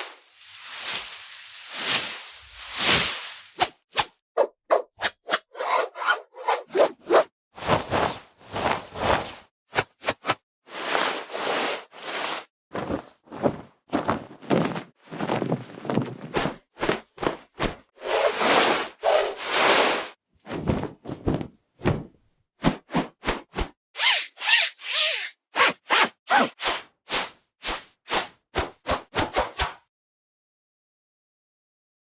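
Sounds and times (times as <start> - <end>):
cloth swishing through air: 0.0 - 4.1, 12.2 - 23.4.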